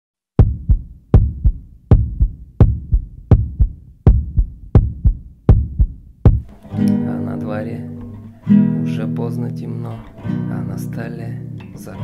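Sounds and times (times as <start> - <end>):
heartbeat thumps: 0.4 - 6.5.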